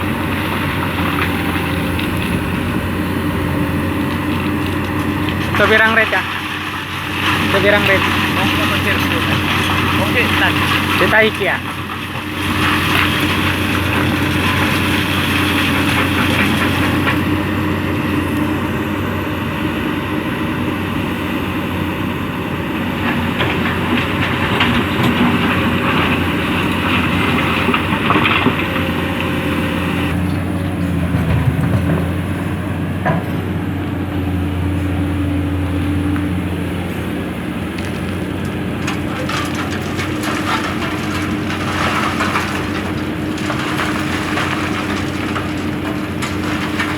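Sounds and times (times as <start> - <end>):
excavator diesel engine running: 0.0 - 46.9
stone grinding in bucket: 4.4 - 17.2, 37.8 - 46.9.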